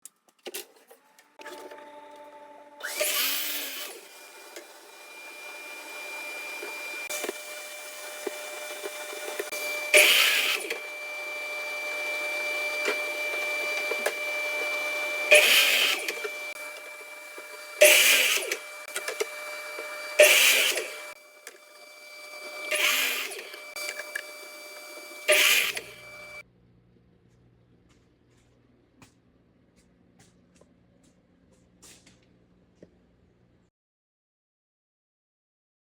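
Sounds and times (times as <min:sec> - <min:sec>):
power tool cutting wood: 0:01.0 - 0:26.4
power tool motor whining: 0:01.0 - 0:26.4.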